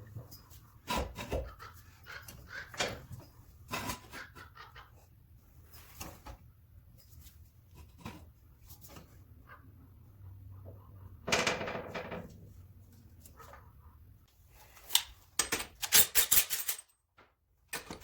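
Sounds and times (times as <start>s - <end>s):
tools clicking and knocking: 14.9s - 18.0s.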